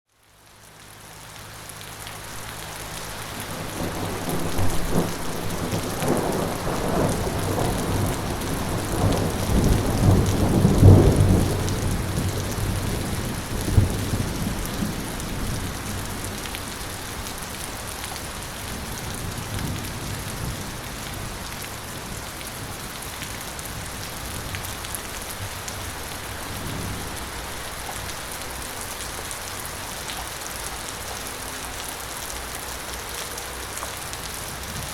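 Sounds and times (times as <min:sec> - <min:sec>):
light rain hissing: 0:00.3 - 0:34.9
thunder rumbling: 0:03.0 - 0:17.9.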